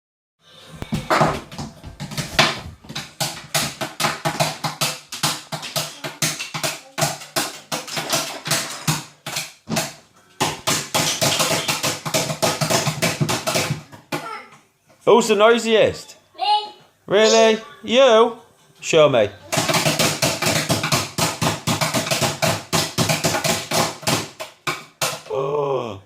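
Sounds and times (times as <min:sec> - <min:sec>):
rapid banging on something hard: 0:01.0 - 0:14.3, 0:19.5 - 0:25.3.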